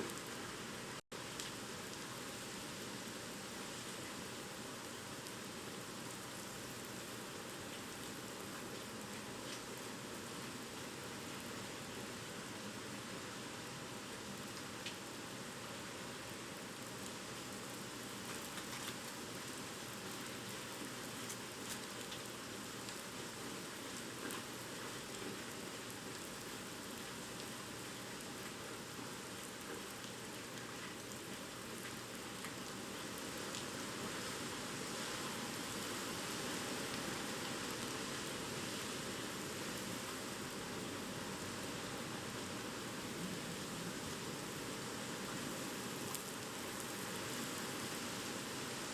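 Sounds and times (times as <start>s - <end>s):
heavy rain hiss: 0.0s - 48.9s
raindrop ticks: 14.5s - 15.0s.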